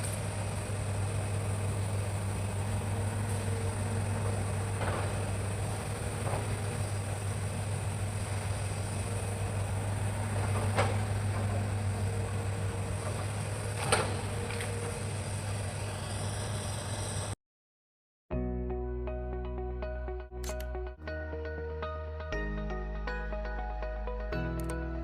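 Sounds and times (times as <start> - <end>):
excavator diesel engine running: 0.0 - 17.4.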